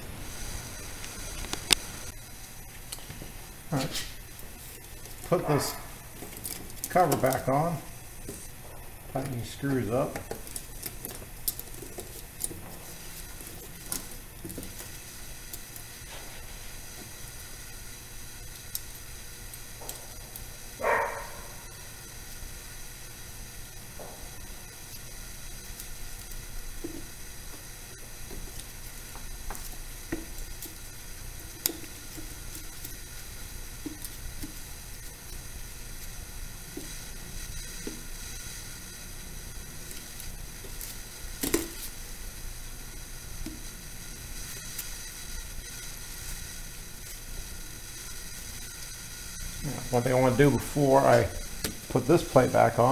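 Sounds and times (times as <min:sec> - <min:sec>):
steady hiss: 0:00.0 - 0:52.9.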